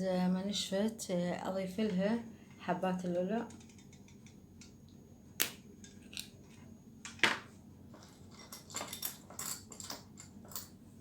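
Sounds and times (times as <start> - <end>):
shells and beads clinking: 8.3 - 10.8.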